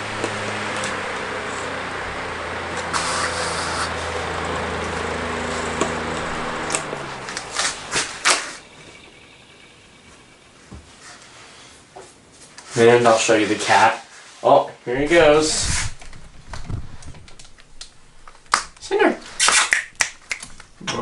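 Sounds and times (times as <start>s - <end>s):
fan clicks: 0.0s - 3.1s, 3.8s - 9.2s, 15.1s - 19.0s
electric fan motor humming: 0.0s - 11.9s, 14.9s - 20.8s.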